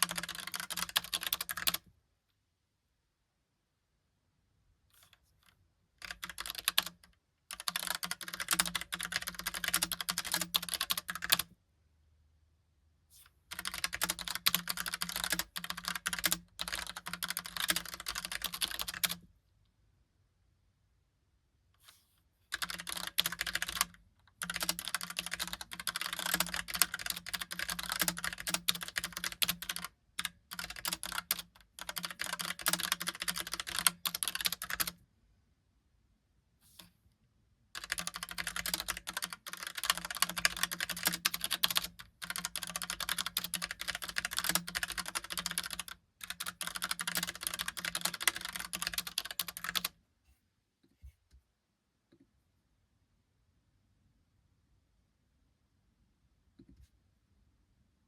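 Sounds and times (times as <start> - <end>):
mechanical keyboard typing: 0.0 - 1.8, 6.0 - 11.5, 13.5 - 19.2, 22.5 - 35.0, 37.8 - 49.9.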